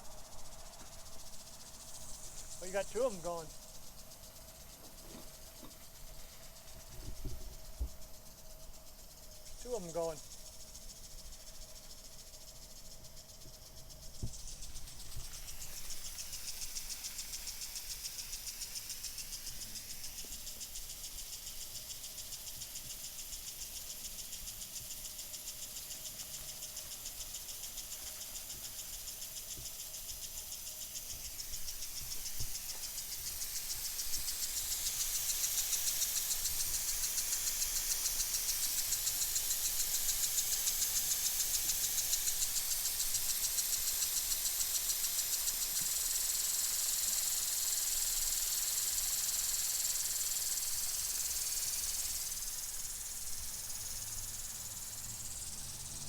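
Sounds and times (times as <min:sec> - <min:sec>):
water hissing through pump: 0:14.1 - 0:56.0.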